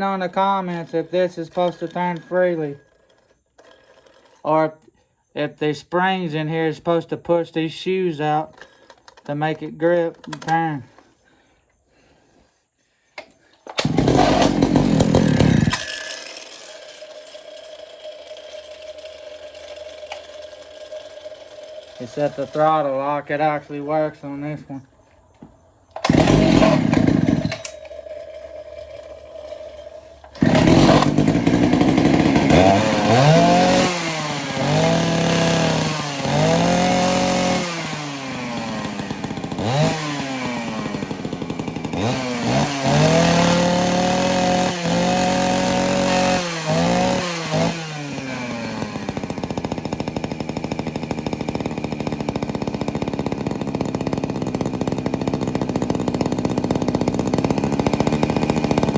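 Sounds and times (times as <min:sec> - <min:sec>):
chainsaw revving and idling: 0:00.0 - 0:03.0, 0:13.7 - 0:24.8, 0:25.9 - 0:58.9.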